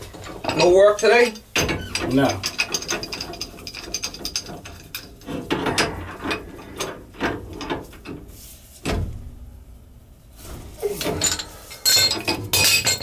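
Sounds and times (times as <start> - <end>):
hand tools ratcheting on metal: 0.2 - 7.0.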